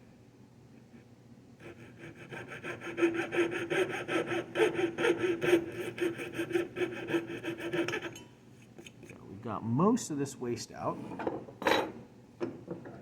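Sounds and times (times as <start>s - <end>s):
saw cutting wood: 1.6s - 8.2s.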